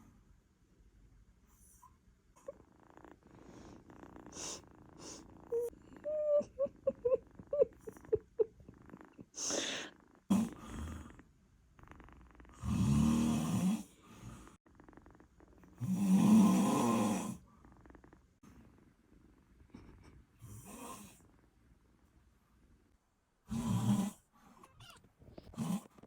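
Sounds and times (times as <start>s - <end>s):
cat snoring: 1.6s - 6.4s, 7.4s - 21.4s, 23.5s - 24.2s, 25.4s - 26.0s
hissing breath: 9.4s - 9.9s.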